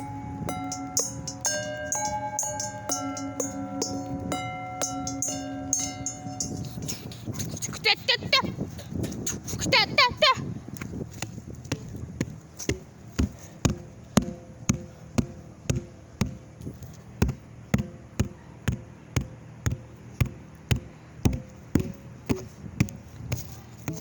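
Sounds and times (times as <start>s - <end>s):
faint steady tone: 0.0s - 7.6s
sharp knocks: 11.7s - 16.4s, 17.2s - 24.0s.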